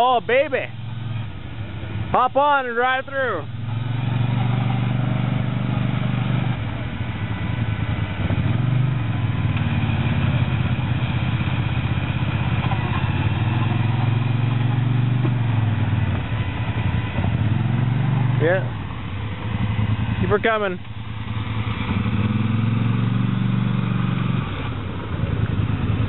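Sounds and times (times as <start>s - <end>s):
quad bike engine under load: 7.6s - 18.7s.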